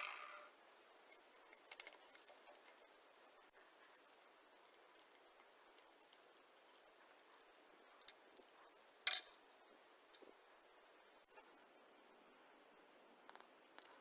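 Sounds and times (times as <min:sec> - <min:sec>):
small parts clicking and tapping: 0:01.0 - 0:02.8, 0:04.6 - 0:10.3.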